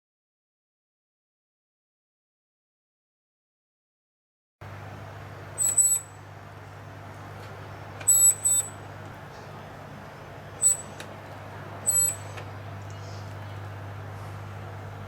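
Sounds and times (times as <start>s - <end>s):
steady low hum: 4.6s - 15.0s
autofocus motor squealing: 5.6s - 6.2s, 8.1s - 8.8s, 10.6s - 11.0s, 11.8s - 12.4s.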